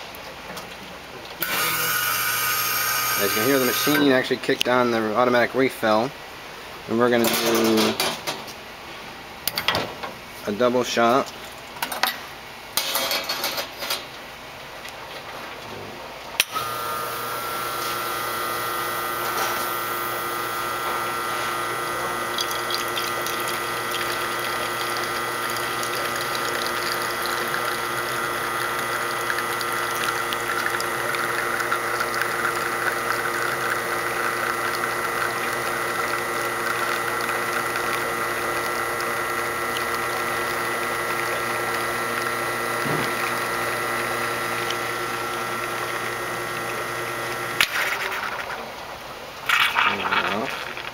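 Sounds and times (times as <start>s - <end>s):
espresso machine pump humming: 1.4s - 4.2s, 16.4s - 48.9s.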